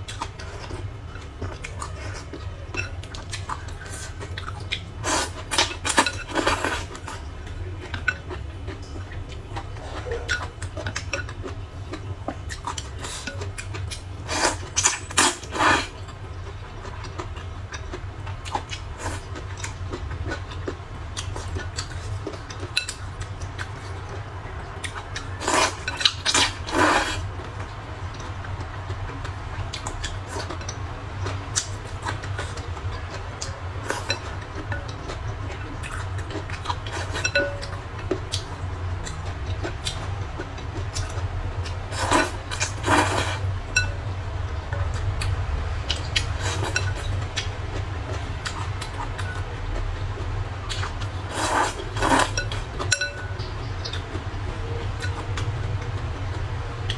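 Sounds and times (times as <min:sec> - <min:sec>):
slurping: 0:05.0 - 0:07.2, 0:14.2 - 0:16.0, 0:25.2 - 0:27.3, 0:40.8 - 0:43.5, 0:46.1 - 0:47.5, 0:50.8 - 0:52.8
utensils clinking against bowl: 0:21.4 - 0:27.2, 0:31.5 - 0:40.1, 0:40.8 - 0:44.0, 0:46.2 - 0:47.5, 0:50.7 - 0:54.1.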